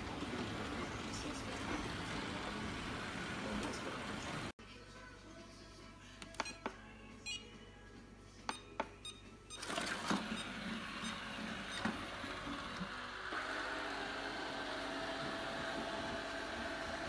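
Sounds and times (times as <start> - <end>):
robot vacuum motor whirring: 9.6 - 17.0.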